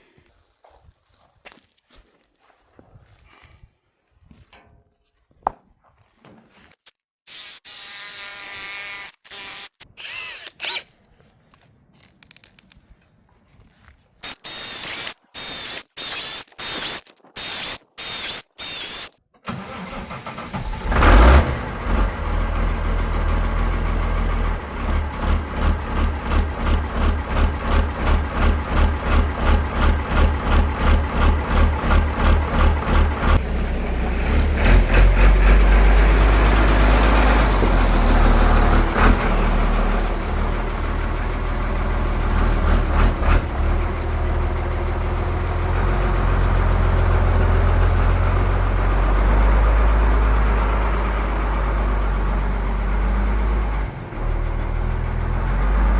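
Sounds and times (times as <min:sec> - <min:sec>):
scraping and high squeaking: 0:06.5 - 0:11.0, 0:14.2 - 0:20.2
engine cranking and starting: 0:14.2 - 0:55.9
engine running with pulsing beat: 0:23.1 - 0:38.1.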